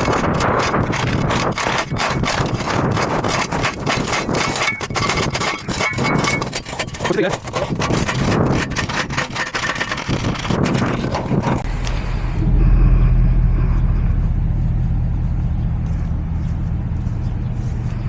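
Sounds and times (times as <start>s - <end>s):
scraping and handling noises: 0.0s - 11.9s
engine idling: 11.6s - 18.0s.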